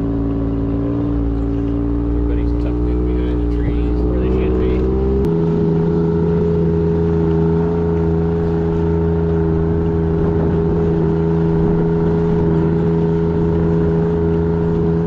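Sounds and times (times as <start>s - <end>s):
vehicle engine running steadily: 0.0s - 15.0s.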